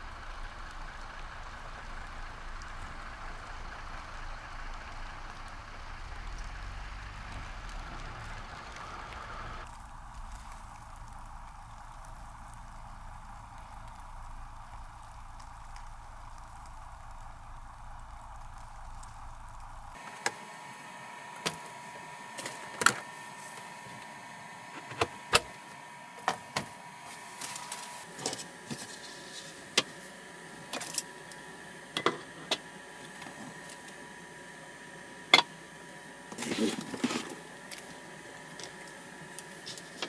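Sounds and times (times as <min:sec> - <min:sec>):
faint steady hum: 0:00.0 - 0:40.0
rustling scrape: 0:27.1 - 0:30.1, 0:36.4 - 0:38.0.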